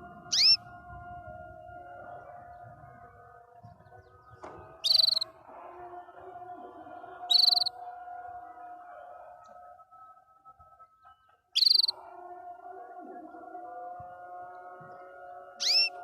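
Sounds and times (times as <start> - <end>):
canary trilling: 0.3 - 0.6, 4.7 - 5.3, 7.2 - 7.7, 11.6 - 12.0, 15.6 - 16.0
soft held bird tones: 0.3 - 0.6, 3.8 - 5.3, 7.2 - 7.8, 11.0 - 12.0, 15.0 - 16.0.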